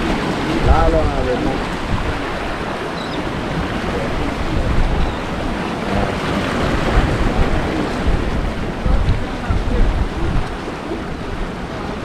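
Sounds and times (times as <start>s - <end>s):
surf washing: 0.0s - 12.0s
wind buffeting microphone: 0.0s - 12.0s.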